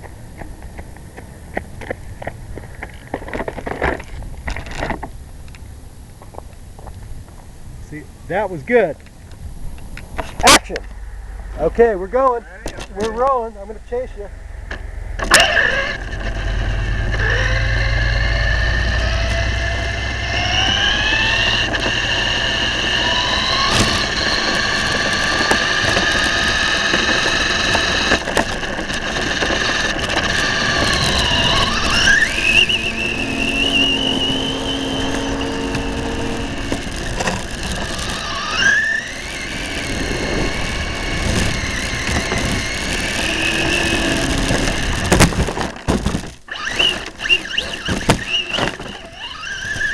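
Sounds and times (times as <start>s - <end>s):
model airplane motor whining: 14.7s - 49.9s.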